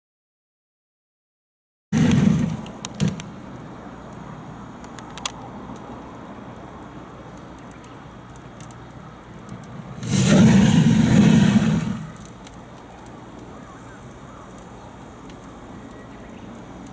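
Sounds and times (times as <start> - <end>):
faint clicks: 4.8 - 6.2, 6.8 - 9.8, 12.1 - 16.9.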